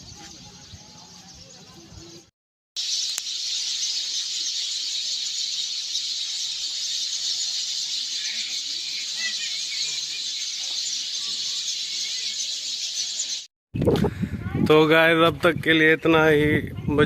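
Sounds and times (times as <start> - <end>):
faint bird chirps: 0.0 - 13.5
insects chirring: 2.8 - 13.4.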